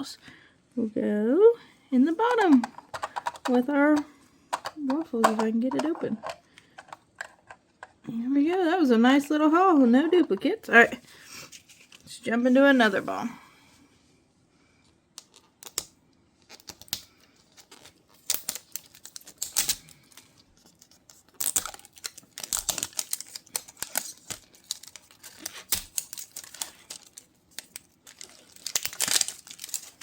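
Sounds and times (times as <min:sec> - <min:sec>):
plastic wrap crinkling: 0:16.4 - 0:30.0.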